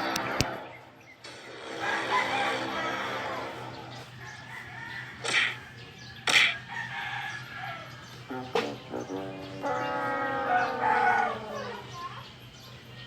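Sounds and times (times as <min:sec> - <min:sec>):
chicken squawking: 0:08.4 - 0:12.0.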